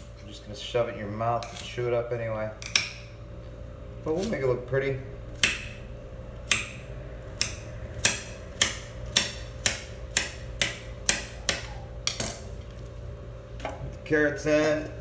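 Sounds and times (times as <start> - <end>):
knife chopping on countertop: 1.4 - 1.7, 5.4 - 5.8, 6.4 - 12.6.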